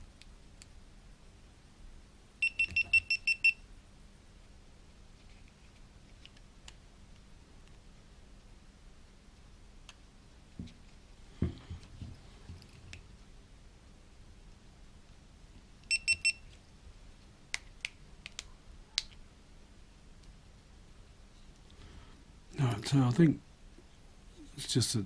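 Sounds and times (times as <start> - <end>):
camera electronic beeps: 2.4 - 3.6, 15.9 - 16.4.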